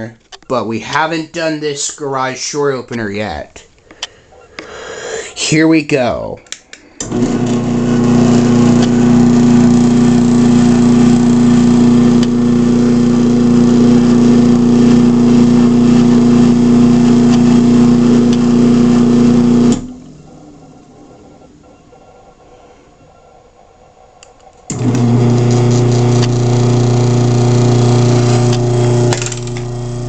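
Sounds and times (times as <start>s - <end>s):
garage door opener motor hum: 7.0s - 21.1s, 24.7s - 30.0s.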